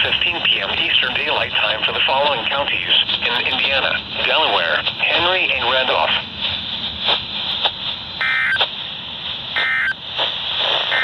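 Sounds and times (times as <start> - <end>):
radio static hiss: 0.0 - 11.0
warbling digital data tones: 8.2 - 8.6, 9.6 - 10.0.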